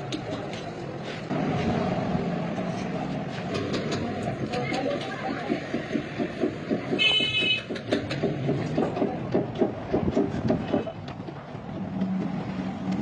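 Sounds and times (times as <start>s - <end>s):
rapid repeated knocking: 3.5s - 13.0s.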